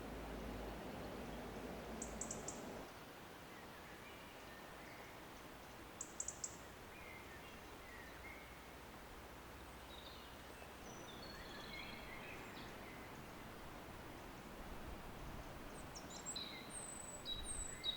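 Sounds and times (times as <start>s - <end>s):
background hiss: 0.0s - 17.9s
bird chirps: 0.7s - 2.8s, 15.7s - 17.9s.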